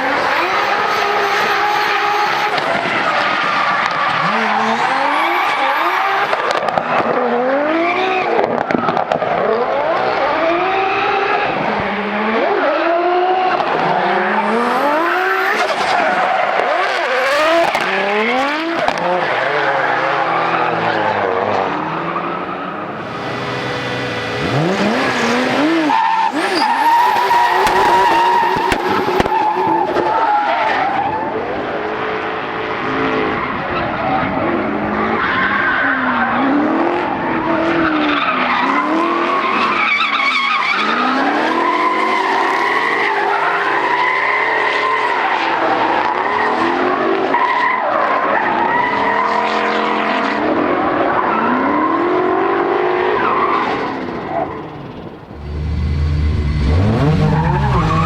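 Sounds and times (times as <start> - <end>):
tyre squeal: 0.0 - 6.5, 22.1 - 31.2, 37.8 - 45.4, 53.2 - 58.0
car engines revving: 0.0 - 58.0.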